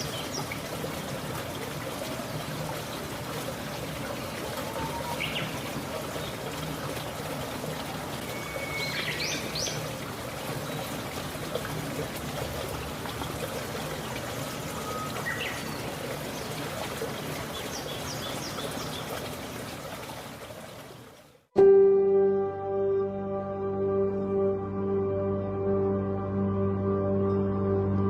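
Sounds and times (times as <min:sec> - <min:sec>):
waterfall rushing: 0:00.0 - 0:19.3.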